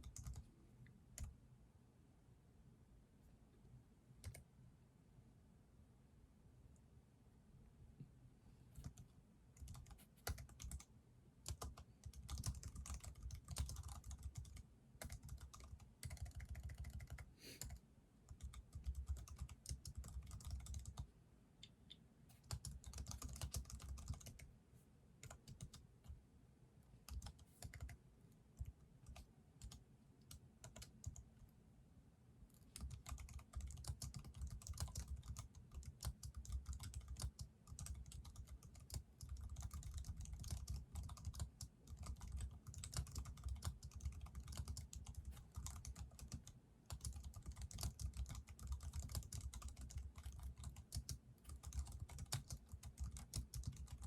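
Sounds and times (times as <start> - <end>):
computer keyboard typing: 0.0 - 0.5, 4.2 - 4.4, 8.8 - 24.5, 25.2 - 26.2, 27.0 - 28.0, 28.6 - 31.3, 32.6 - 54.0.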